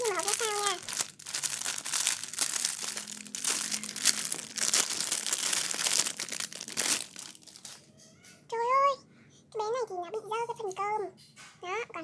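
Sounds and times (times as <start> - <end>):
plastic packaging crinkling: 0.0 - 7.9.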